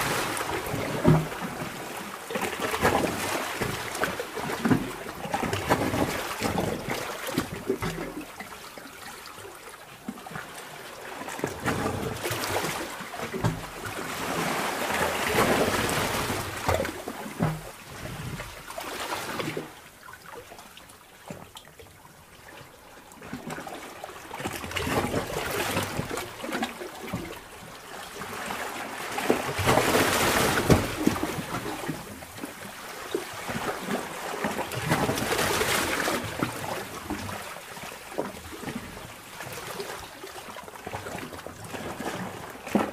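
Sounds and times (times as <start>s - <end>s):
water surging in swells: 0.0s - 21.2s.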